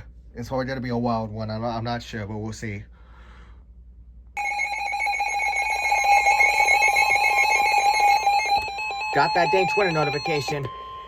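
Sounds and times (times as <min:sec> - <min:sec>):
two-tone alarm: 0:04.4 - 0:11.0.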